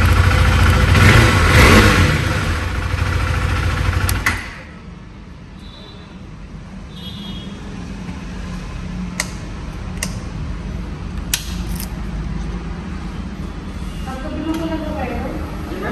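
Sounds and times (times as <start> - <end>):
engine revving: 0.0 - 4.3
motorcycle engine idling: 0.0 - 4.3.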